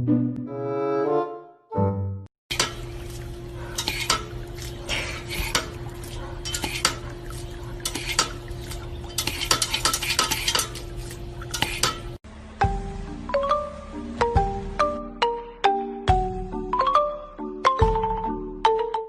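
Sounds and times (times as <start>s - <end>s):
kitchenware clinking and scraping: 2.5s - 12.2s
steady low hum: 2.5s - 14.8s.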